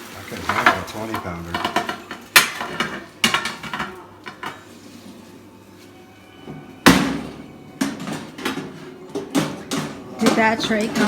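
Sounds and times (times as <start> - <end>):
knocks on kitchen countertop: 6.8 - 11.0.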